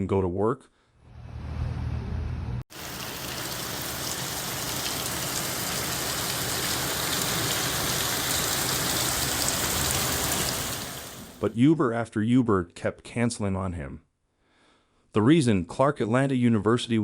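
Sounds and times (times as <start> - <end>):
heavy rain pouring: 2.7 - 11.5.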